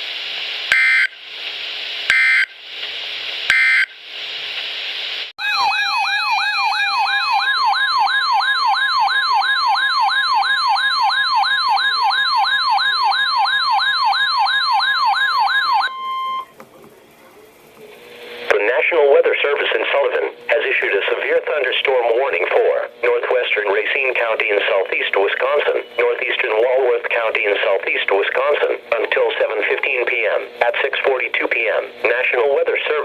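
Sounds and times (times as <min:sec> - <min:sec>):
siren-like alert tone: 0:05.4 - 0:16.5
radio static: 0:16.5 - 0:33.0.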